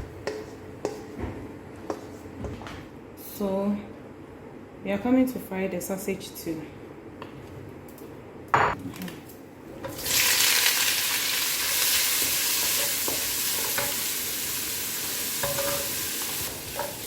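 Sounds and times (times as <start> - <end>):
sausage sizzling in oil: 9.9 - 17.0.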